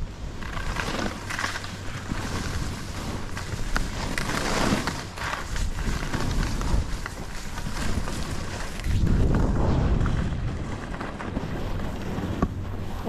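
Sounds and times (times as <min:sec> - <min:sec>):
skis scraping through snow: 0:00.0 - 0:13.0
wind buffeting microphone: 0:00.0 - 0:13.0.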